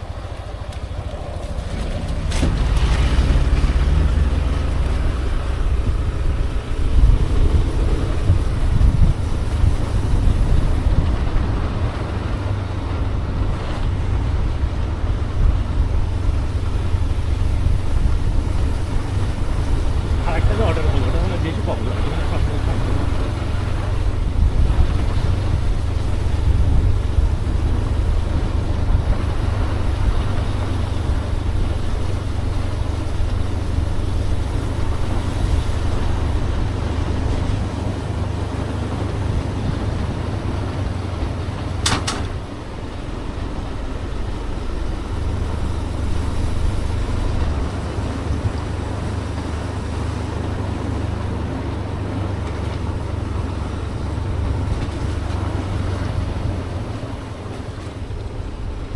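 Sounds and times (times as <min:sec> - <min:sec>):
motorbike rumble: 0:00.0 - 0:58.9
wind buffeting microphone: 0:00.0 - 0:58.9
sharp click: 0:41.8 - 0:42.4.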